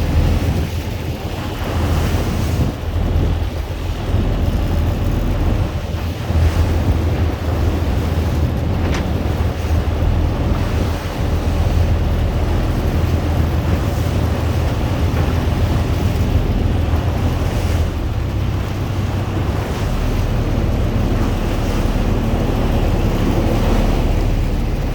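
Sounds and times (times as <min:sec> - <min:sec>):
sea waves surging against shore: 0:00.0 - 0:24.9
wind buffeting microphone: 0:00.0 - 0:24.9.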